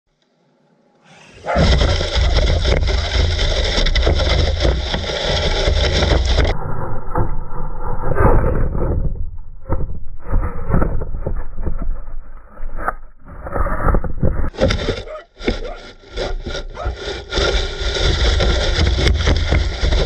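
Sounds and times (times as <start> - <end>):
rc car rumbling over lawn: 1.0 - 6.6, 14.5 - 20.0.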